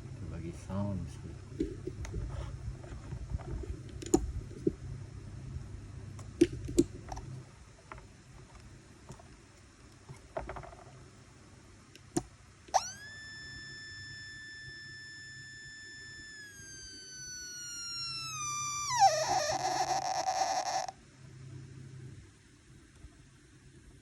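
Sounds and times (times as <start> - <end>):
electronic tone sweeping into beep: 12.8 - 20.0.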